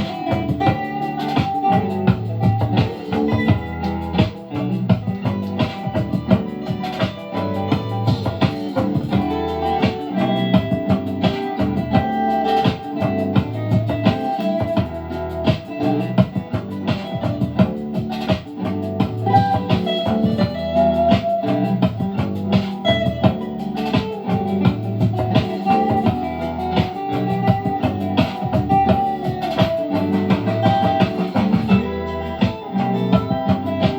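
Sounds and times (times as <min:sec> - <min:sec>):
guitar and drums music on speaker: 0:00.0 - 0:33.9.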